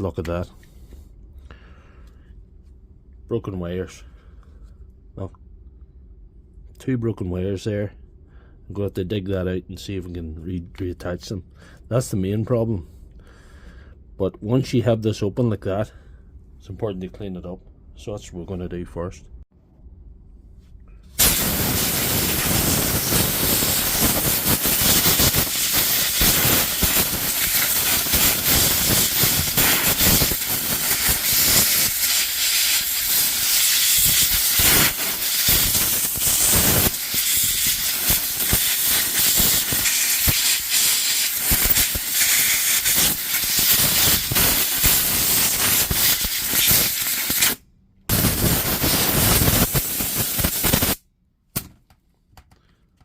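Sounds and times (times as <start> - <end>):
compressed air blast hissing: 21.2 - 51.0.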